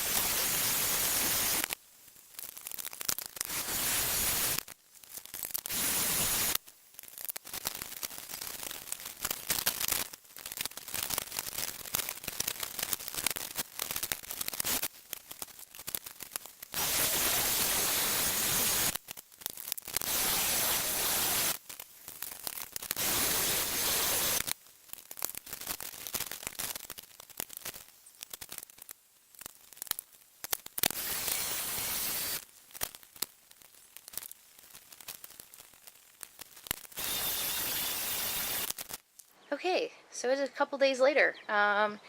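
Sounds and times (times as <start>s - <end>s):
loud hissing bursts: 0.0s - 1.7s, 3.4s - 4.6s, 5.6s - 6.6s, 16.7s - 19.0s, 20.0s - 21.6s, 22.9s - 24.5s, 30.8s - 32.5s, 37.0s - 38.9s
crinkling handling noise: 6.5s - 16.8s, 24.4s - 37.2s, 38.5s - 39.4s.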